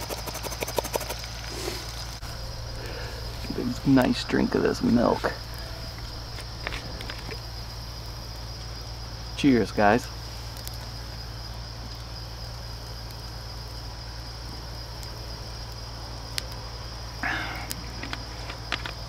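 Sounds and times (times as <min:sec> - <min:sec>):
insects chirring: 0:00.0 - 0:19.0.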